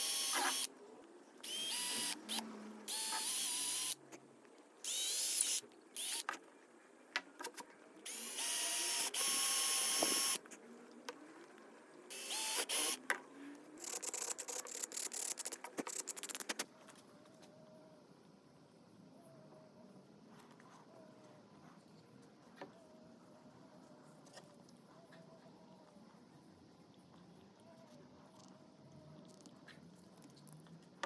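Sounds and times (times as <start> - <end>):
electric drill whining: 0.0 - 0.7, 1.4 - 4.0, 4.9 - 6.3, 8.1 - 10.4, 12.1 - 13.0.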